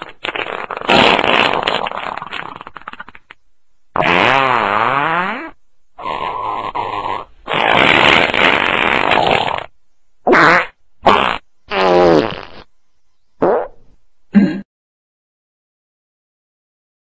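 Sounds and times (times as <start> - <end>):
comic fart sounds: 0.0 - 3.4, 4.0 - 9.7, 10.3 - 12.7, 13.4 - 13.9.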